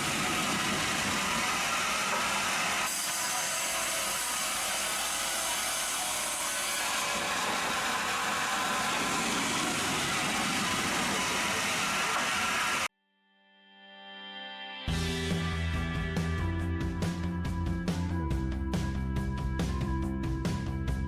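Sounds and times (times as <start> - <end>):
wood-processing machinery running: 0.0 - 12.9.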